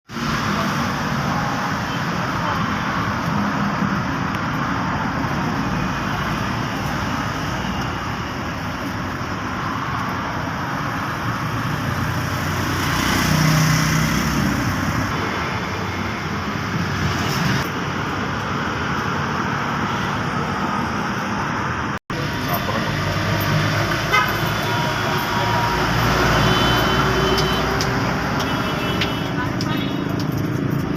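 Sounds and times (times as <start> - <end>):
road traffic: 0.0 - 30.9
loud vehicle passing: 11.2 - 17.6, 21.8 - 28.9.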